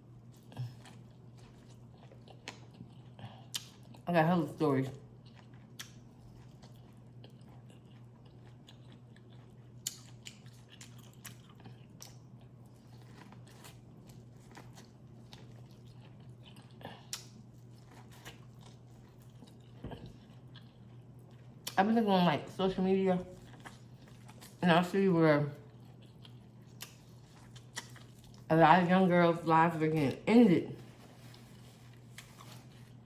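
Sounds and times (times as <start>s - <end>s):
chewing and biting: 0.2s - 4.0s, 5.1s - 21.8s, 23.2s - 24.6s, 25.6s - 28.5s.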